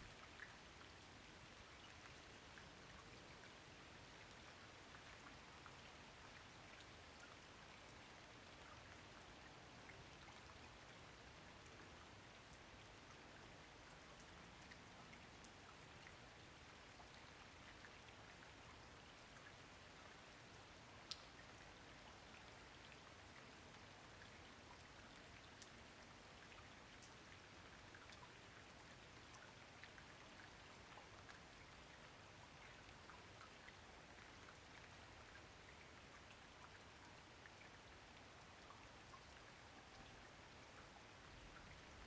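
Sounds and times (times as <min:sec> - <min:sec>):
faint steady rain: 0:00.0 - 0:42.0
raindrops ticking: 0:21.0 - 0:21.6.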